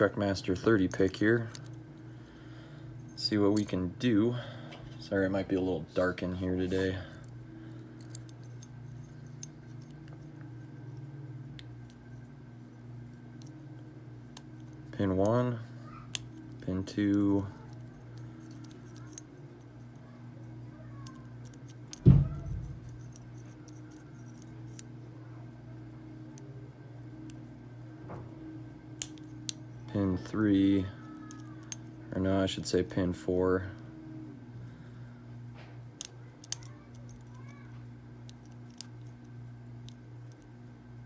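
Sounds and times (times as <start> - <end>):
steady low hum: 0.0 - 41.0
lock pick metallic clicks: 16.1 - 19.3, 29.0 - 29.6, 36.0 - 37.5
loud low thump: 22.0 - 22.8.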